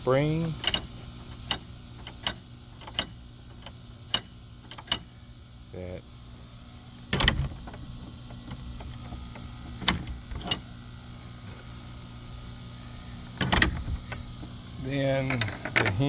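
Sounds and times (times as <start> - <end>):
steady low hum: 0.0 - 16.0
gate latch clanking: 7.1 - 9.2, 13.4 - 14.2, 15.2 - 16.0.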